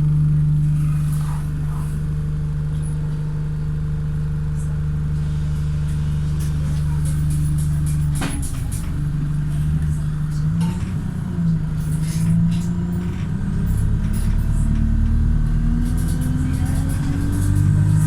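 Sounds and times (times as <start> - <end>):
bus diesel engine running: 0.0 - 18.0
rattles and clicks: 6.4 - 18.0.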